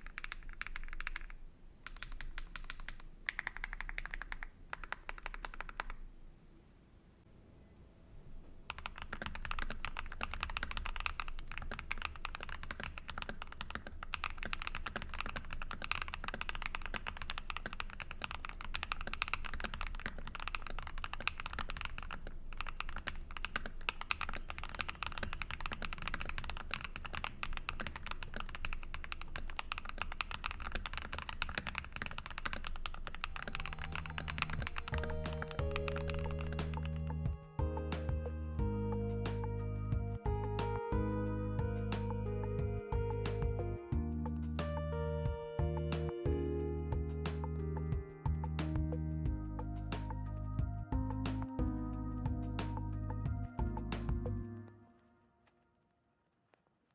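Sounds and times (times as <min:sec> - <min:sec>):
mechanical keyboard typing: 0:00.0 - 0:06.1, 0:08.7 - 0:38.2.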